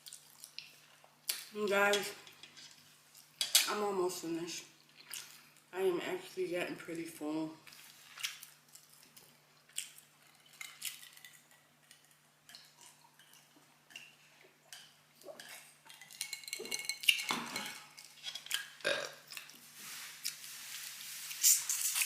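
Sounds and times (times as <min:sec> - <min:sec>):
cutlery and dishes clinking: 0:15.4 - 0:18.8.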